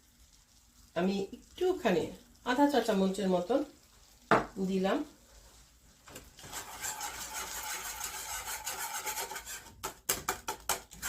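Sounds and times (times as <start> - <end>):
utensil knocking on pan: 4.3 - 4.6
utensil scraping pan: 6.4 - 10.0.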